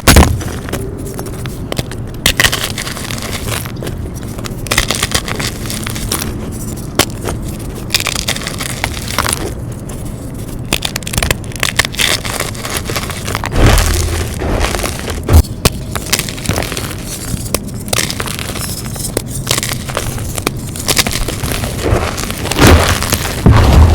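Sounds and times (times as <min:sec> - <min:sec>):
low thud: 0:00.0 - 0:00.7, 0:13.5 - 0:15.5, 0:22.6 - 0:23.9
chalk blocks crunching: 0:00.0 - 0:23.9.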